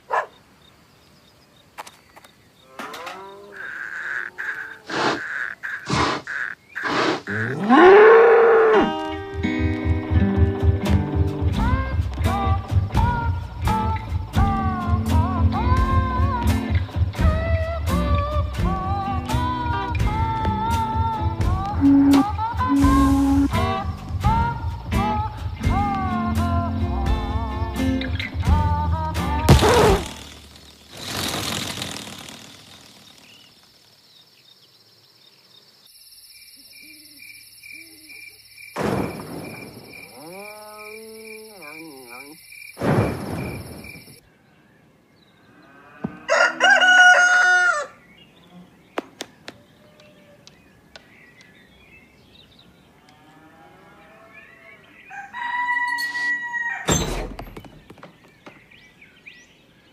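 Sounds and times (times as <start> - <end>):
rooster crowing: 46.0 - 48.0, 55.0 - 56.9.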